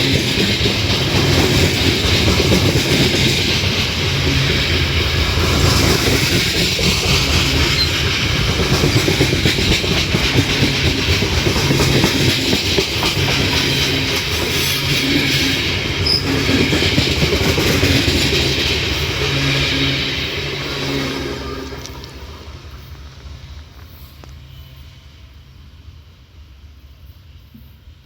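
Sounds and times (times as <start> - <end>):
freight train wheels clattering: 0.0 - 24.6.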